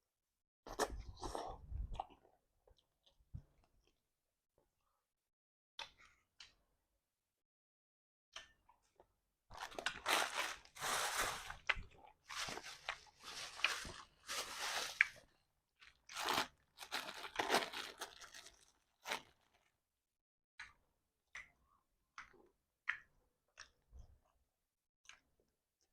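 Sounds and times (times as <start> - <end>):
person crunching and chewing bones: 15.8 - 19.4.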